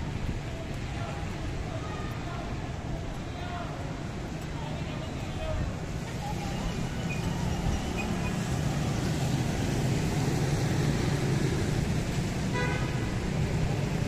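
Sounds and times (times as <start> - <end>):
street traffic passing: 0.0 - 14.0
vehicle horn beep: 12.5 - 13.0.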